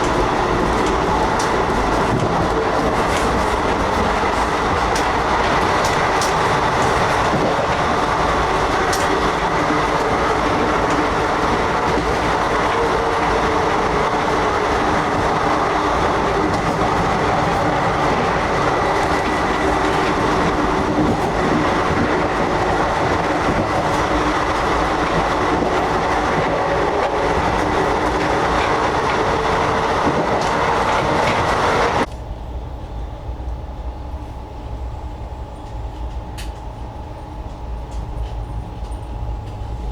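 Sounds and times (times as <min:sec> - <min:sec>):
train wheels rumbling and rattling: 0:00.0 - 0:39.9.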